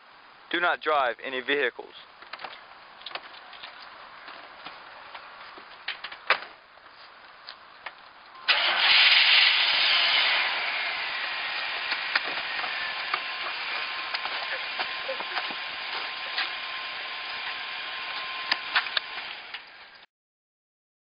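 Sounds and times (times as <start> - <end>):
car engine starting and running: 8.4 - 19.9.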